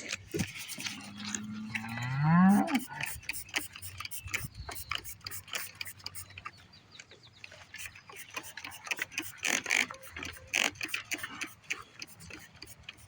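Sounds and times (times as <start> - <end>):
cow mooing: 0.9 - 3.1.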